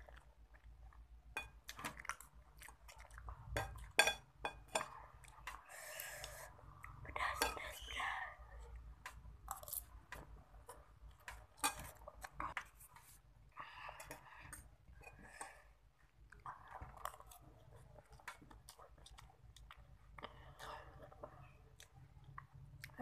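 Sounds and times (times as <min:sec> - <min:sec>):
chewing noodles: 0:00.0 - 0:04.0, 0:15.9 - 0:23.0.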